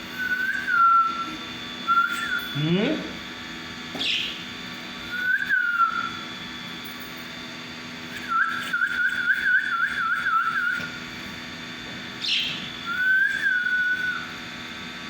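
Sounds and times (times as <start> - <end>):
parakeets chirping and whistling: 4.0 - 4.5, 12.2 - 14.2.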